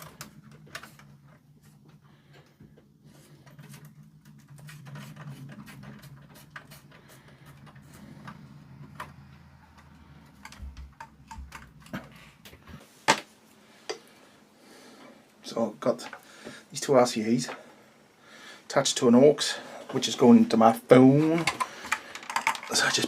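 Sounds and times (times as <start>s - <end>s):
wires and connectors clicking: 0.0s - 13.3s, 21.2s - 23.0s.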